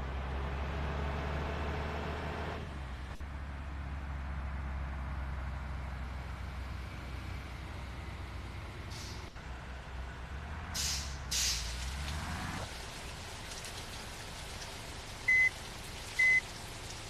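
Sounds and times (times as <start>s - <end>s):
bus engine low rumble: 0.0s - 17.0s
air brake hisses: 8.9s - 9.4s, 10.8s - 11.7s.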